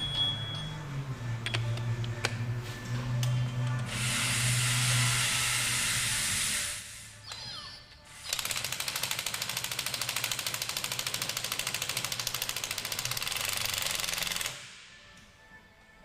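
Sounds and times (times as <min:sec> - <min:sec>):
pneumatic air tool hammering: 0:03.8 - 0:14.8.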